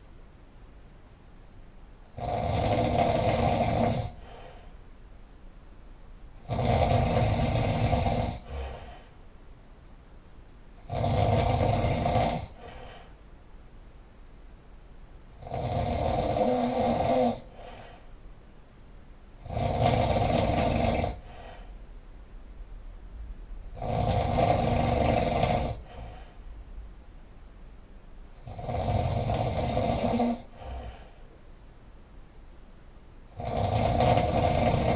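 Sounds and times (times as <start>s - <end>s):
quiet breathing: 2.0s - 5.0s, 6.3s - 9.3s, 10.7s - 13.5s, 15.3s - 18.5s, 19.4s - 22.0s, 23.5s - 26.9s, 28.3s - 31.6s
person snoring loudly: 2.1s - 4.4s, 6.4s - 9.1s, 10.8s - 13.0s, 15.4s - 18.0s, 19.4s - 21.7s, 23.7s - 26.4s, 28.4s - 31.2s, 33.3s - 34.9s.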